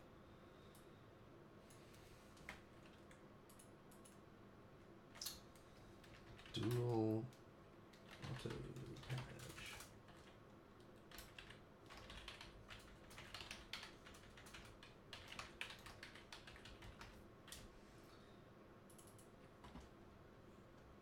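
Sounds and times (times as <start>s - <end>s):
typing on computer keyboard: 2.4s - 4.2s, 5.2s - 7.0s, 7.9s - 17.7s, 18.9s - 19.9s.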